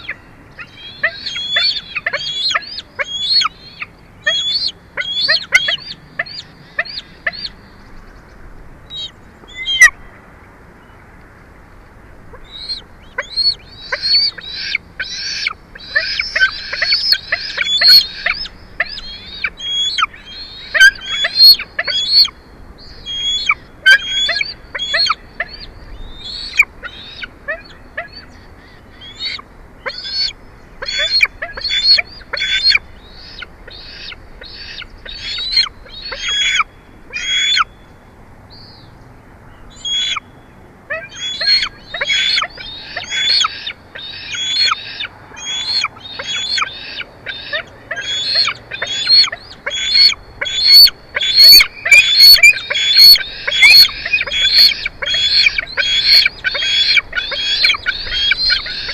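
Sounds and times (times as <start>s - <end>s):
eagle piping calls: 0.0s - 8.1s, 8.9s - 10.2s, 12.2s - 37.8s, 39.6s - 40.3s, 40.9s - 58.9s
eagle chattering: 41.2s - 58.9s.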